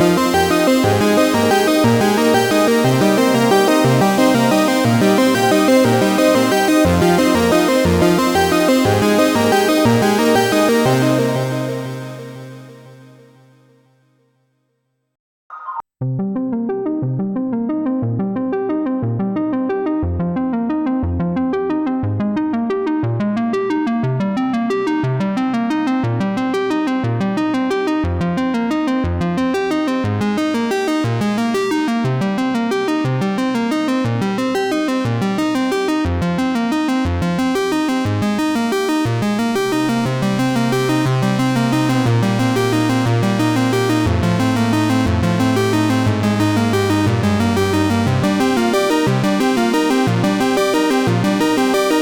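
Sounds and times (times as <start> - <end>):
sustained bass line: 0.0 - 12.6, 39.7 - 52.0
electronic synthesizer music: 0.0 - 13.3, 38.5 - 52.0.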